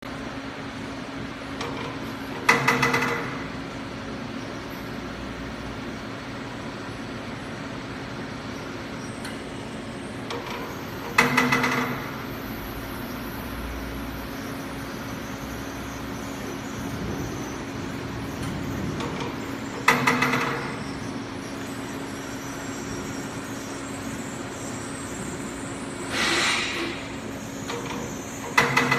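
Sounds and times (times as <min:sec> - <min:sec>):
machine humming: 0:00.1 - 0:28.9
burst of mechanical noise: 0:26.1 - 0:27.3.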